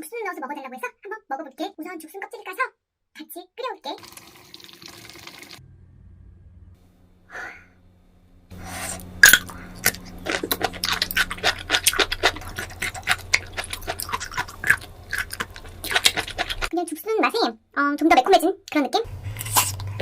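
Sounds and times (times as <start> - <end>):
slurping: 8.6 - 16.7, 19.2 - 20.0
chewing and crunching: 8.9 - 16.8, 19.2 - 20.0.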